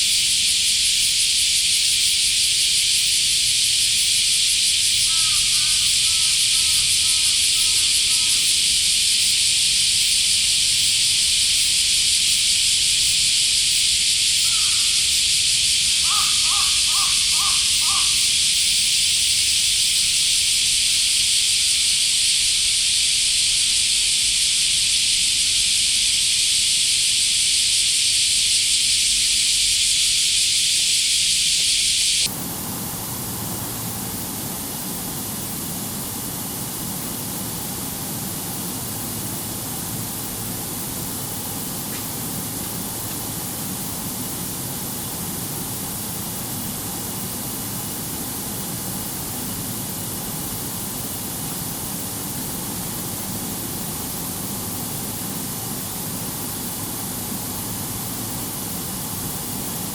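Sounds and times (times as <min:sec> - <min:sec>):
cicadas chorus: 0:00.0 - 0:59.9
bird short calls: 0:16.0 - 0:18.2.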